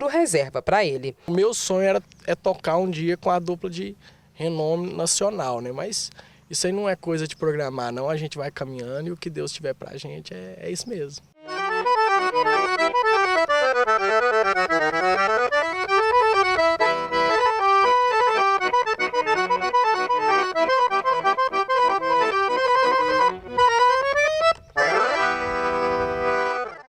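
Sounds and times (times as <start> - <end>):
solo accordion: 11.3 - 26.9.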